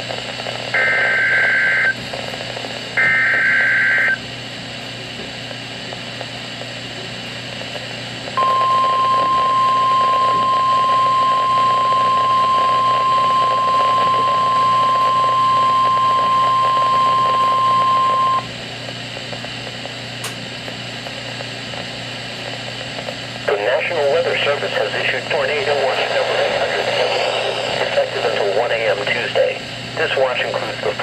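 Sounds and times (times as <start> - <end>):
radio static hiss: 0.0 - 31.0
steady high warning beep: 3.0 - 4.2, 8.4 - 18.5.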